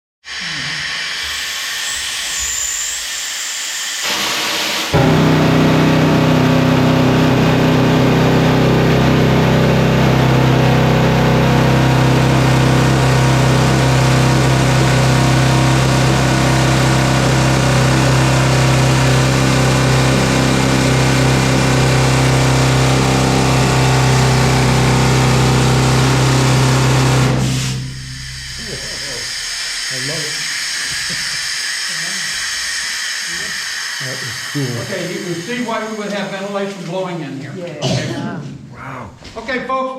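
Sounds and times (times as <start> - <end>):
air exhaust hiss: 0.3 - 7.8, 24.6 - 37.0
pneumatic drill buzzing: 0.8 - 36.6.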